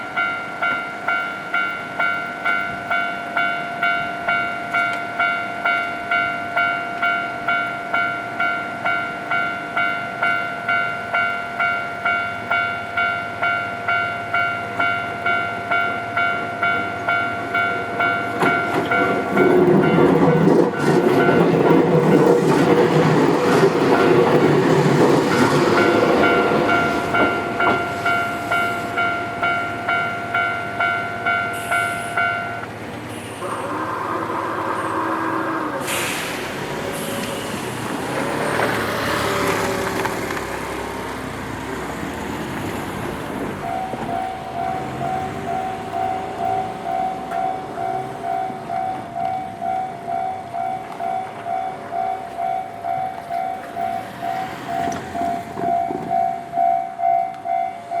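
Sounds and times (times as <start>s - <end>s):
crossing alarm bell ringing: 0.0s - 39.4s, 42.9s - 58.0s
train rumbling over rails: 0.0s - 58.0s
train horn: 33.4s - 36.4s.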